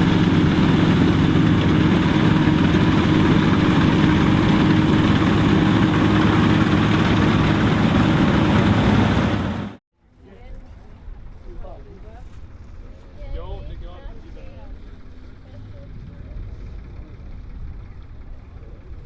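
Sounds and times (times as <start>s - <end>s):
combine harvester engine drone: 0.0s - 9.8s, 13.6s - 19.0s.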